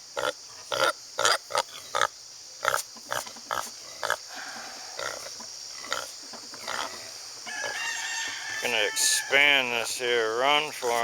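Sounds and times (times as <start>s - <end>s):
pig grunting: 0.2s - 7.0s.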